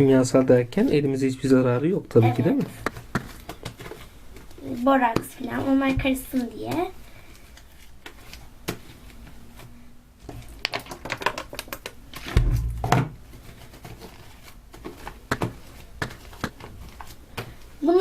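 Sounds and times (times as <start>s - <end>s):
low thump: 12.3s - 13.2s.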